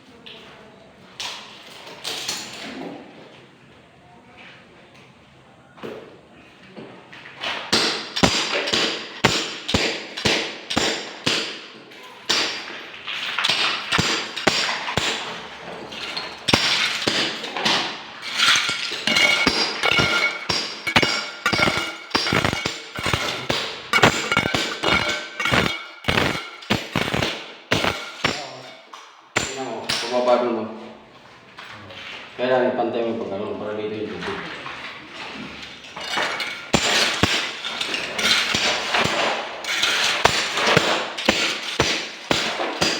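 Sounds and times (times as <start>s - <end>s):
hammer blows with metallic ring: 7.8s - 11.7s, 18.6s - 30.3s.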